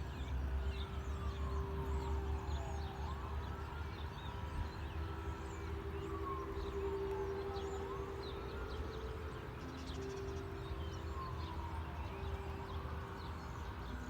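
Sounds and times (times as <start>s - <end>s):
sirens wailing: 0.0s - 14.0s.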